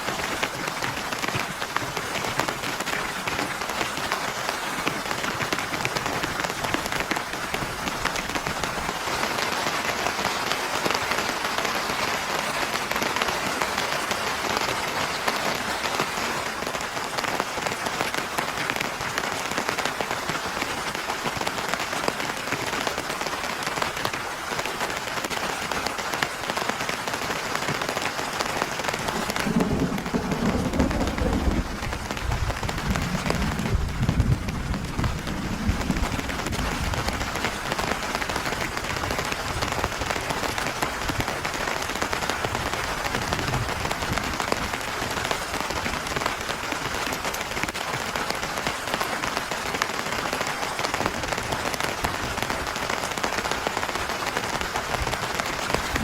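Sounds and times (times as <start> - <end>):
heavy rain hissing: 0.0 - 56.0
low rumble: 29.1 - 37.2.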